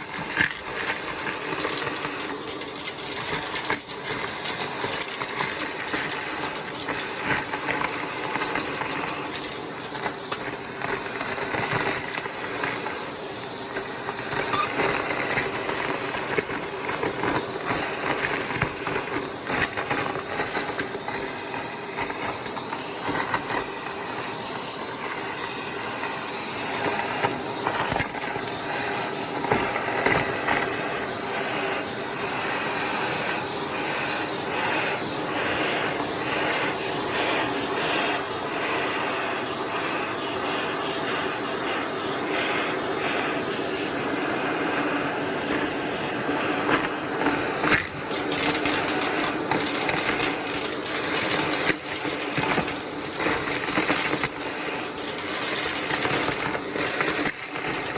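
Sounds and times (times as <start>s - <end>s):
debris crackling in nozzle: 0.0s - 25.4s, 46.5s - 57.9s
vacuum cleaner motor hum: 0.0s - 57.9s.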